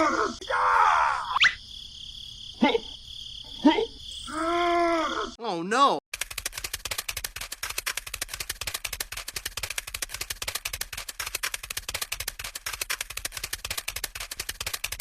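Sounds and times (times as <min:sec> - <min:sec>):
fast mechanical clicking: 0:06.1 - 0:15.0.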